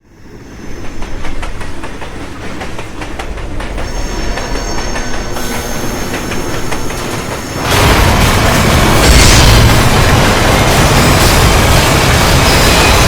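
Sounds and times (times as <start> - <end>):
train rumbling on rails: 0.0 - 13.0
wheels clattering over rail joints: 0.7 - 13.0
high metal squeal: 3.8 - 8.2.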